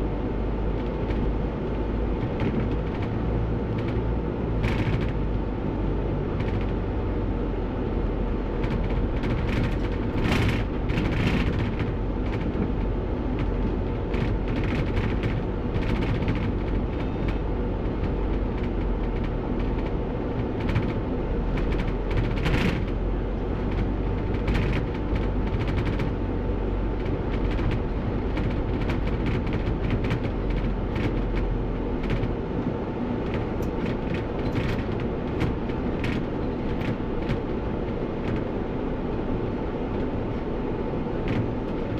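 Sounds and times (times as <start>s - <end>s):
bus engine and road rumble: 0.0s - 41.9s
rattles and knocks: 4.6s - 5.2s, 8.6s - 23.0s, 23.6s - 26.2s, 26.9s - 32.4s, 33.2s - 38.5s.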